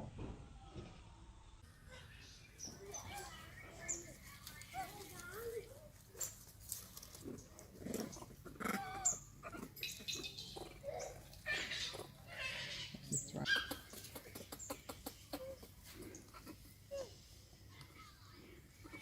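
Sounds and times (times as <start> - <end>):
monkeys squeaking and chattering: 7.2 - 17.2.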